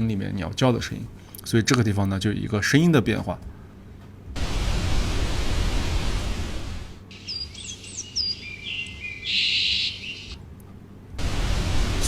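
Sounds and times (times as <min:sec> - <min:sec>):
waterfall rushing: 0:04.4 - 0:07.0, 0:11.2 - 0:12.0
birds chirping and twittering: 0:07.1 - 0:10.4.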